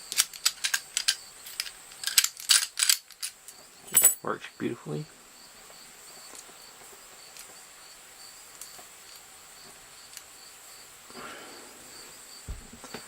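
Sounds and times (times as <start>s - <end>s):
padlock and keys clicking: 0.0s - 4.2s
steady high hiss: 0.0s - 13.0s.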